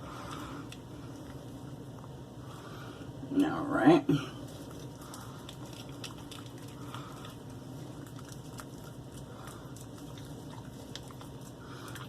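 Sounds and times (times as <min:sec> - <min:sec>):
steady low hum: 0:00.0 - 0:12.0
wet hands working soap: 0:04.4 - 0:12.0.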